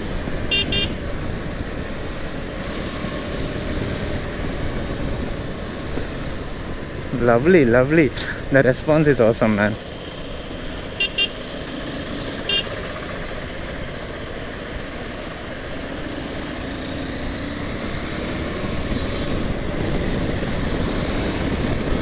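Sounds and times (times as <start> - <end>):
motorcycle wind and road noise: 0.0 - 22.0
vehicle horn toots: 0.4 - 1.1, 10.9 - 11.5, 12.4 - 12.9.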